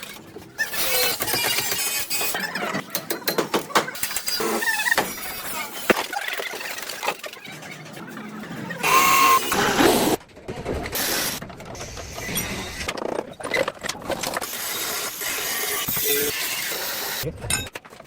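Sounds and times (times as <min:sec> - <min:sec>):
mechanical clanks and clicks: 0:00.0 - 0:05.3.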